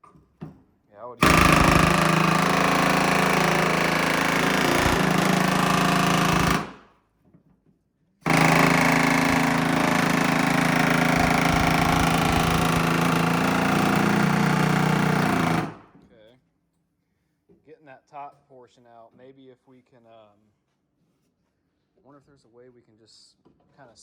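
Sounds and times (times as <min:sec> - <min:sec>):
pneumatic air hammer on steel: 0:01.2 - 0:06.8.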